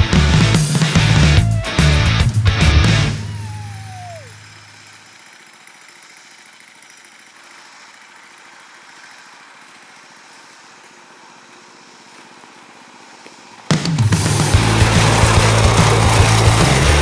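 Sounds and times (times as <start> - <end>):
faint small engine running: 0.0 - 17.0.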